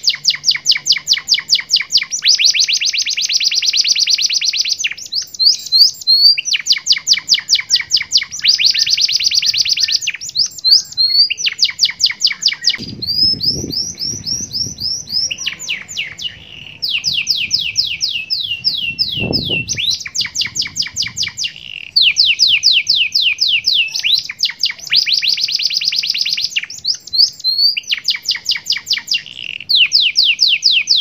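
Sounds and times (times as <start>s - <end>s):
canary singing trills: 0.0s - 31.0s.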